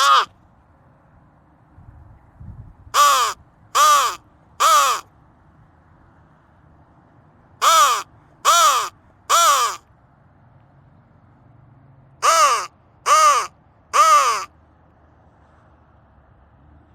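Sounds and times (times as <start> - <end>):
crow call caws: 0.0 - 0.3, 3.0 - 5.1, 7.6 - 9.8, 12.2 - 14.5.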